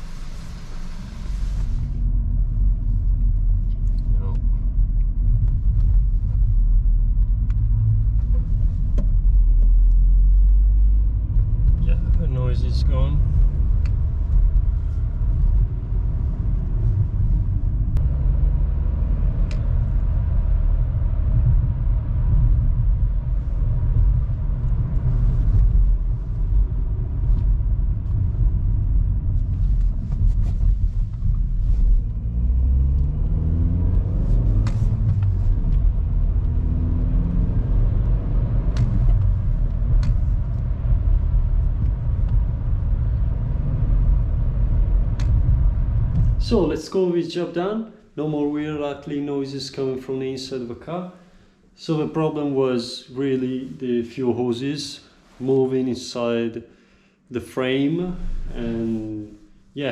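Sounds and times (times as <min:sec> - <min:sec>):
car engine and road rumble: 0:00.0 - 0:55.8, 0:57.4 - 0:59.9.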